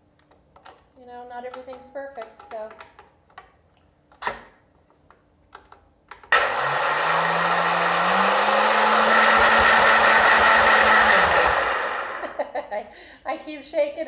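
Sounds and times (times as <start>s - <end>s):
blender churning frozen fruit: 6.3s - 12.4s
blender motor running: 6.3s - 12.4s.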